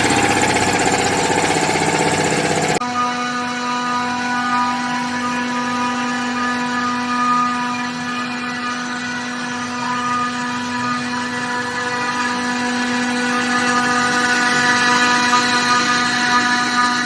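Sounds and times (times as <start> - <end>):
air compressor running: 0.0 - 2.8.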